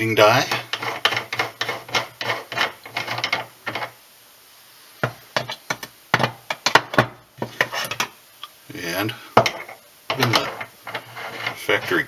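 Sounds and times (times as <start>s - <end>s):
sharp clicks and knocks: 0.5s - 4.0s, 5.0s - 8.1s.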